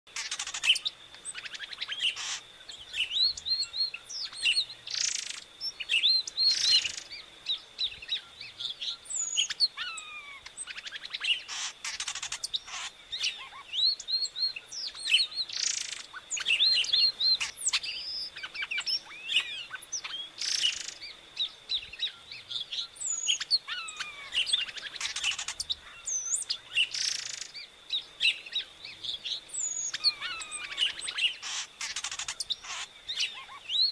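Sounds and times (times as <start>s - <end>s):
bird singing chirps and whistles: 0.1s - 33.9s
faint steady high tone: 12.4s - 33.9s.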